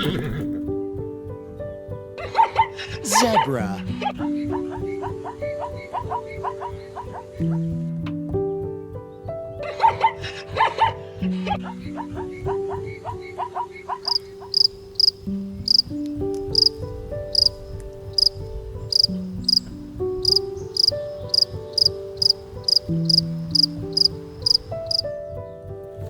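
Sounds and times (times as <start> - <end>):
background music with held notes: 0.0 - 26.0
insect chirping: 14.0 - 15.9, 16.5 - 25.1.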